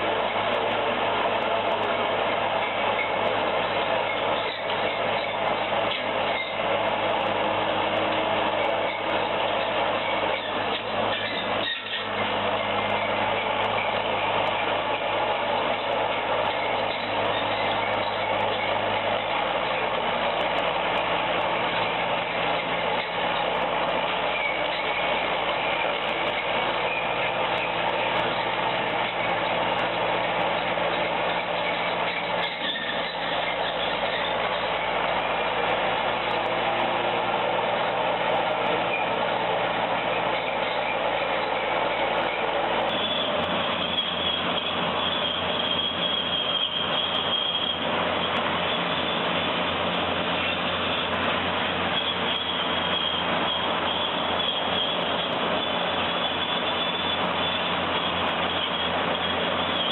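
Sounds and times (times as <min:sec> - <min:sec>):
heavy machinery engine running: 0:00.0 - 0:59.9
steady high whine: 0:00.0 - 0:59.9.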